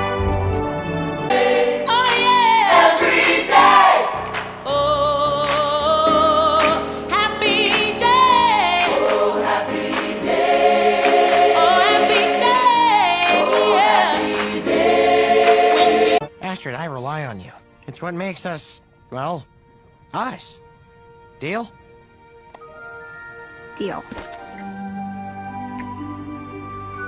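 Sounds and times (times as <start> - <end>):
sustained chords: 0.0 - 3.1
choir-like singing: 0.0 - 16.3.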